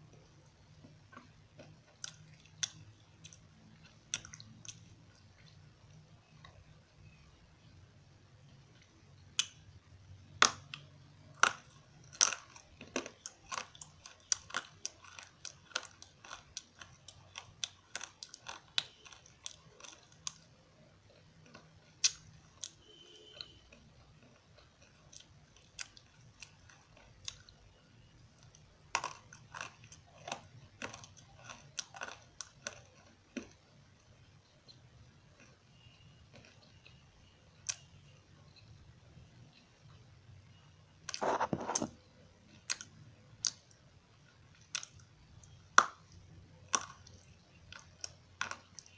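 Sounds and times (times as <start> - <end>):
crunchy clay being chewed: 0.0 - 7.3, 8.6 - 40.0, 41.0 - 48.9.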